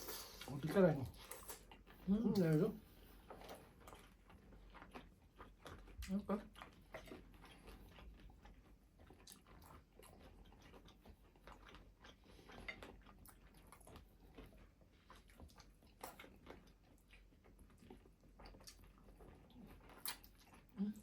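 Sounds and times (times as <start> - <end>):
person chewing and biting: 3.2 - 20.7.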